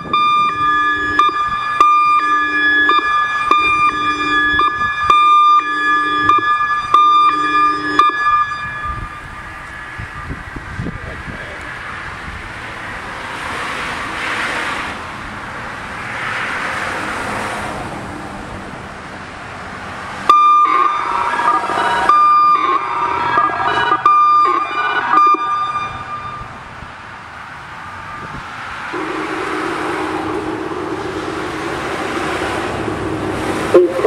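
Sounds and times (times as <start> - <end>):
outdoor warning siren: 0.0 - 12.1, 20.2 - 26.7, 27.8 - 34.0.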